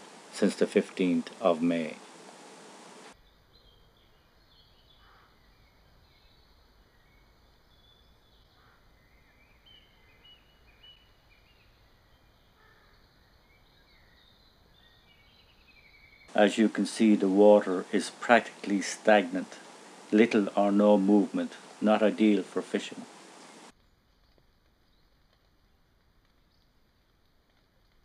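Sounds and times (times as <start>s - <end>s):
bird chirps: 3.2s - 16.4s.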